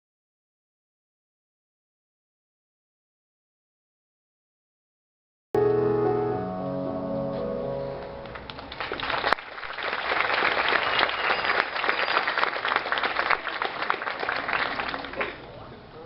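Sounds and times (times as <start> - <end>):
music sustained notes: 5.6 - 8.7
audience applauding: 8.0 - 15.5.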